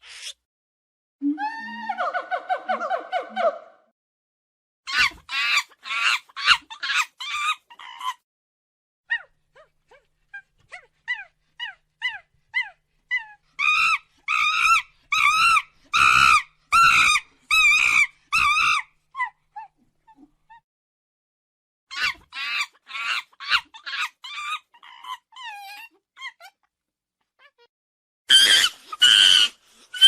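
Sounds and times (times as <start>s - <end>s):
monkey calls: 4.9s - 8.2s, 11.2s - 19.3s, 21.9s - 26.5s, 28.3s - 30.0s
monkey screeching: 4.9s - 8.2s, 11.1s - 19.4s, 21.9s - 26.6s, 28.3s - 30.0s.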